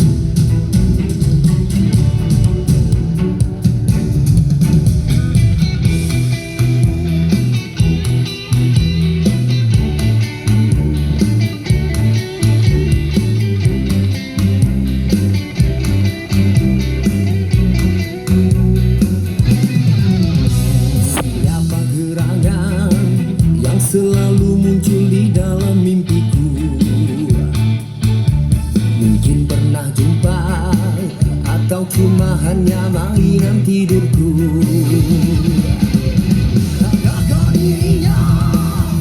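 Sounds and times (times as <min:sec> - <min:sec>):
guitar-led band music: 0:00.0 - 0:39.0.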